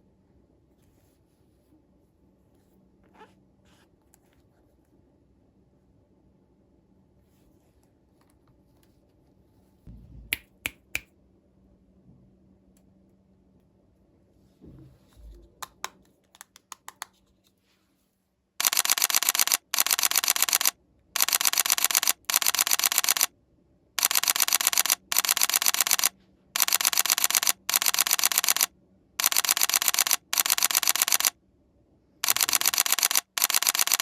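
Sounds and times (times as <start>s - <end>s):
rapid clicking bursts: 18.6s - 23.3s, 24.0s - 31.3s, 32.2s - 34.0s.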